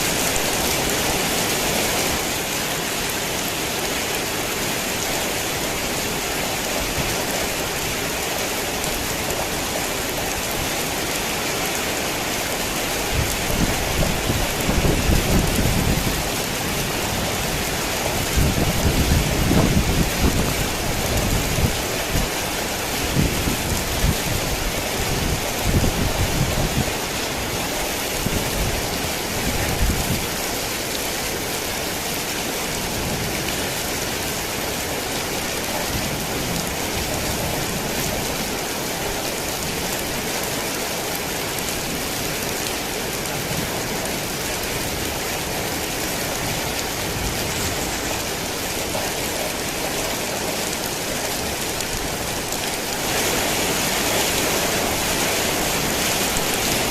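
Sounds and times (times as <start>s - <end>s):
heavy rain falling: 0.0s - 56.9s.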